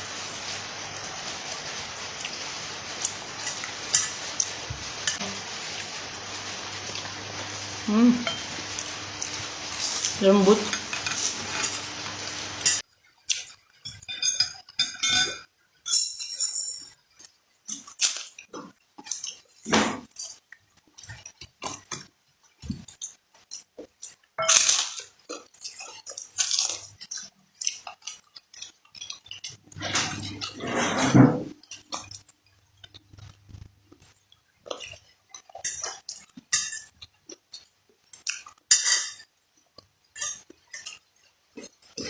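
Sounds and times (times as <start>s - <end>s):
sizzling hiss: 0.0s - 12.8s
cutlery and dishes clinking: 3.0s - 5.2s, 8.2s - 12.8s, 13.4s - 17.0s, 24.4s - 28.2s, 29.0s - 32.2s, 34.8s - 37.1s, 38.2s - 41.0s.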